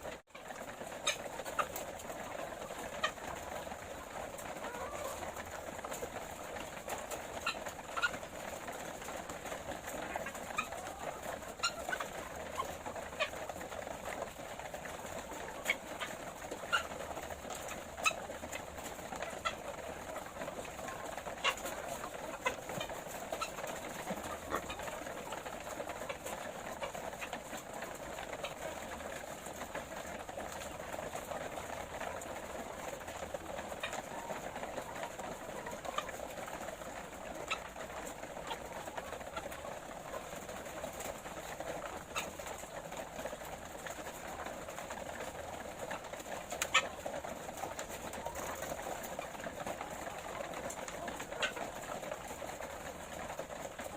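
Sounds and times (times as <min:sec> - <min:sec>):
hens murmuring and clucking: 0:00.0 - 0:53.9.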